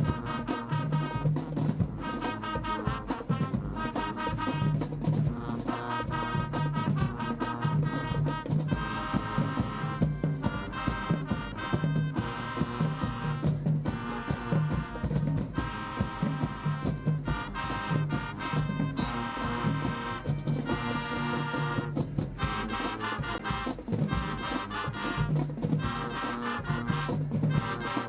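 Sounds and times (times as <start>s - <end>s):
low brass bass line: 0.0s - 28.0s
marching band playing: 0.0s - 28.0s
drum hits: 6.2s - 28.0s.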